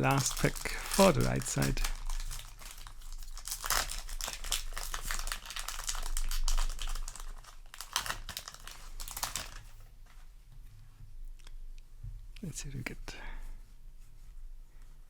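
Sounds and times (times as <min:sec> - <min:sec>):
foil wrapper crinkling: 0:00.0 - 0:09.8.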